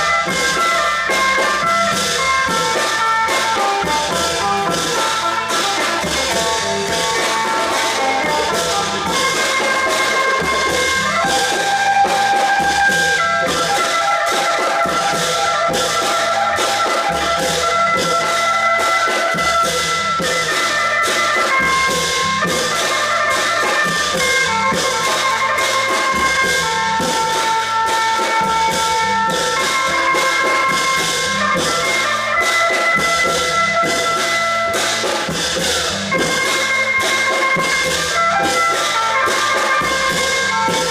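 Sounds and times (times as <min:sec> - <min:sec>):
fast drumming: 0:00.0 - 0:40.9.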